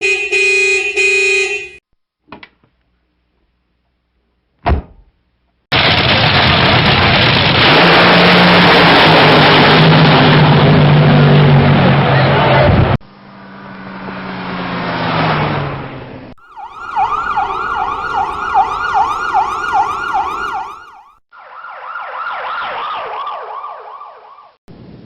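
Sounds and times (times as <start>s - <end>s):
car horn: 0.0s - 1.8s
thump: 4.6s - 5.2s.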